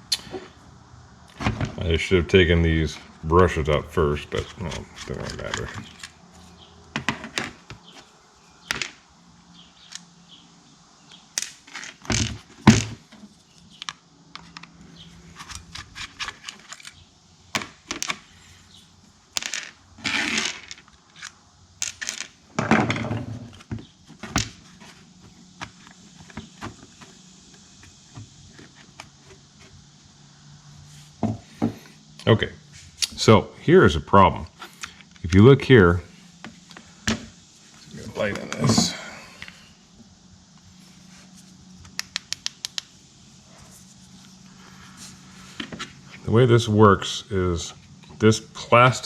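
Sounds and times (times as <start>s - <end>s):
plastic parts clicking and scraping: 4.4s - 6.2s, 13.5s - 17.0s.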